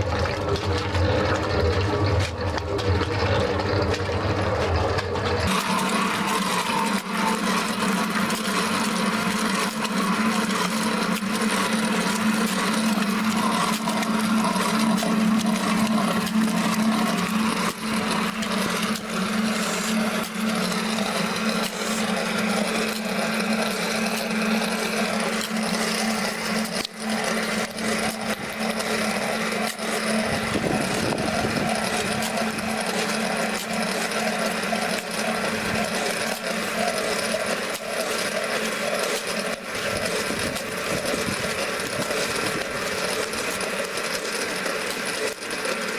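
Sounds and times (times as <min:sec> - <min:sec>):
concrete churning in drum: 0:00.0 - 0:45.9
electric motor hum: 0:00.0 - 0:45.9.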